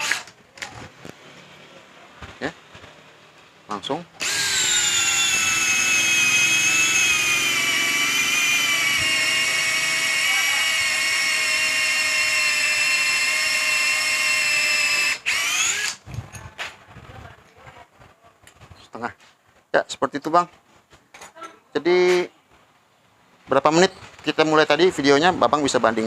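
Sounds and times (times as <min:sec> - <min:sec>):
electric drill spinning: 0:04.2 - 0:16.0.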